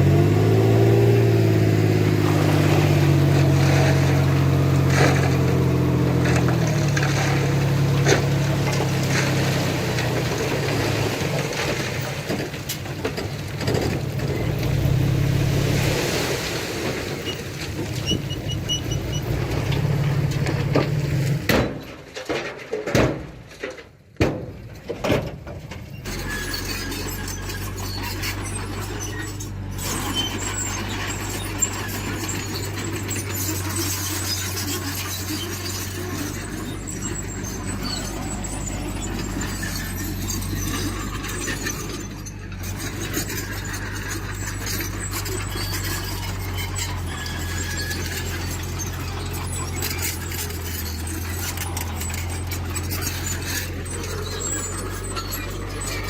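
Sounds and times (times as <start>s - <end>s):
diesel engine of heavy machinery: 0.0s - 22.0s, 24.6s - 56.0s
squealing: 17.2s - 20.7s, 26.0s - 56.0s.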